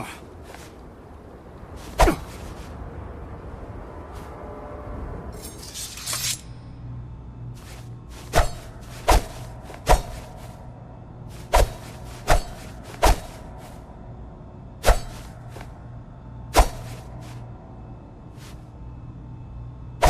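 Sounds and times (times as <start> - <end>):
metallic sword scrape: 5.4 - 6.8.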